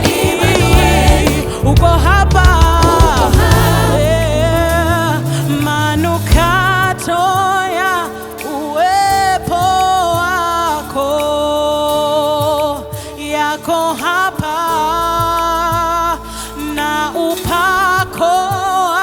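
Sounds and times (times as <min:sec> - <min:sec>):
instrumental backing with bass: 0:00.0 - 0:19.0
person singing with vibrato: 0:00.0 - 0:19.0.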